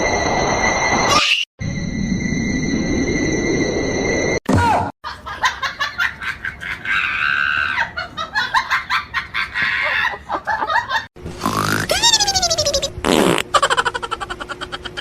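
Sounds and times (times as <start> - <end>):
fart noises: 11.4 - 12.2, 13.0 - 13.6
choppy voice-like sound: 11.6 - 12.7.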